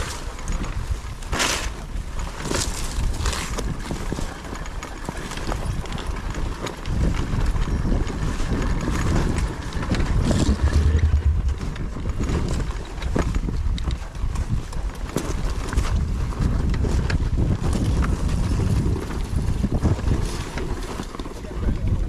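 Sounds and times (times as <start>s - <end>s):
wind buffeting microphone: 6.9s - 15.1s.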